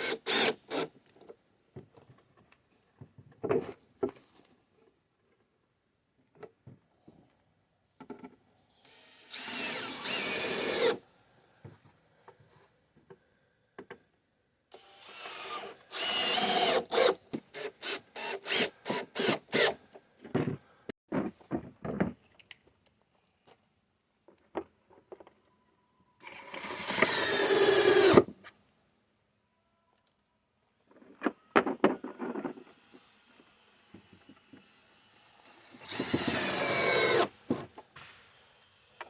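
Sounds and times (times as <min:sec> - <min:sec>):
power drill bursts: 0:00.0 - 0:00.9, 0:08.8 - 0:11.0, 0:14.7 - 0:19.8, 0:26.2 - 0:28.3, 0:35.5 - 0:37.5.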